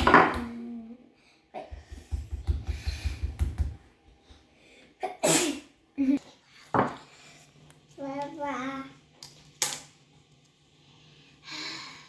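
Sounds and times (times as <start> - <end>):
dough thumping and rubbing: 1.7 - 4.5.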